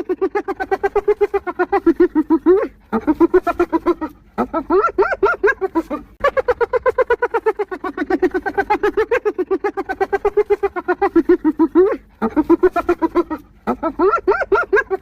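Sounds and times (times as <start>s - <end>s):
hyena giggling: 0.0s - 15.0s.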